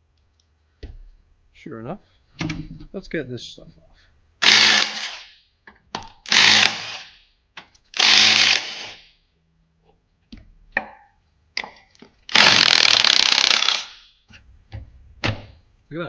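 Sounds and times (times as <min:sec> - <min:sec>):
power tool bursts: 0:04.4 - 0:05.3, 0:06.3 - 0:07.1, 0:08.0 - 0:09.0, 0:12.3 - 0:14.0.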